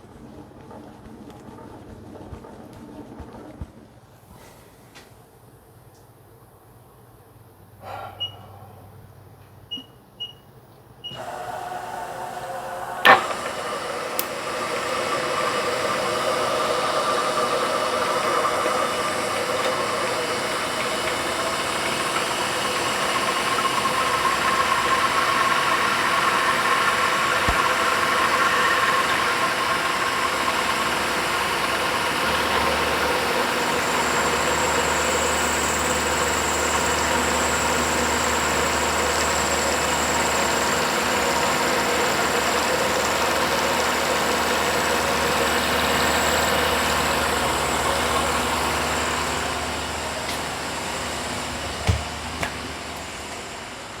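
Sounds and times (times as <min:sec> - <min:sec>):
milling machine cutting metal: 0:11.2 - 0:53.2.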